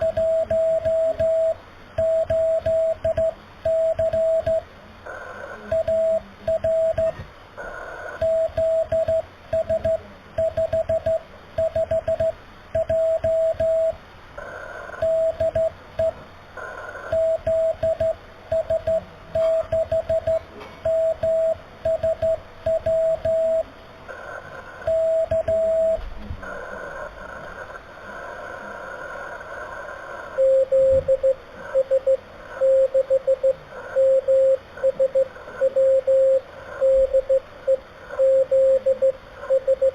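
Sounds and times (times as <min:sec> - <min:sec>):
morse code beeps: 0:00.0 - 0:04.6, 0:05.7 - 0:07.2, 0:08.2 - 0:14.0, 0:15.0 - 0:16.2, 0:17.1 - 0:23.7, 0:24.8 - 0:26.0, 0:30.4 - 0:39.9
radio band hiss: 0:04.8 - 0:08.2, 0:14.3 - 0:15.2, 0:16.1 - 0:17.4, 0:23.4 - 0:30.6, 0:31.3 - 0:39.7.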